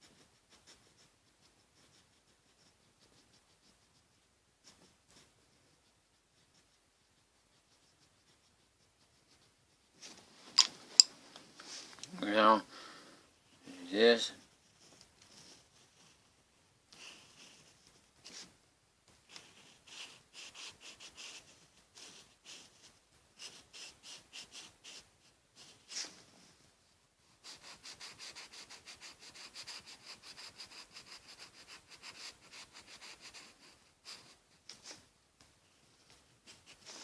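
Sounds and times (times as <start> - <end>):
colouring tool scratching on paper: 0.0 - 10.2, 16.9 - 26.4, 27.4 - 35.1, 36.0 - 37.0.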